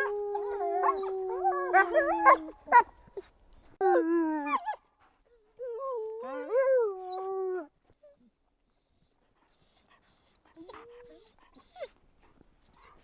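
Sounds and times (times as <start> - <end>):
wolf howling: 0.0 - 2.9.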